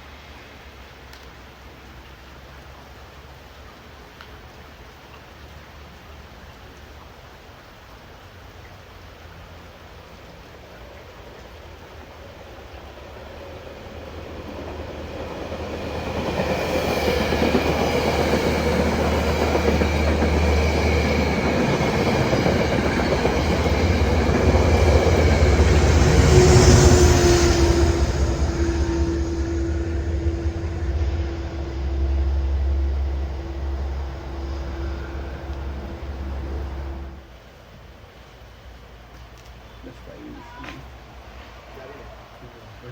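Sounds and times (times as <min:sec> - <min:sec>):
passenger train passing: 0:10.4 - 0:38.7, 0:40.9 - 0:42.9
rail clatter: 0:13.0 - 0:37.2
steady tone: 0:14.1 - 0:37.2.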